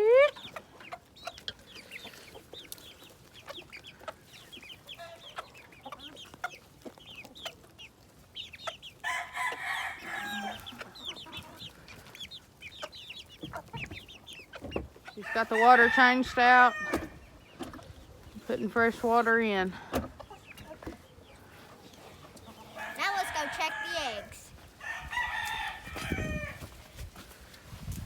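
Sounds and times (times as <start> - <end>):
chickens clucking: 0.0 - 28.0
rooster crowing: 9.0 - 10.7, 15.2 - 17.2, 22.7 - 26.6.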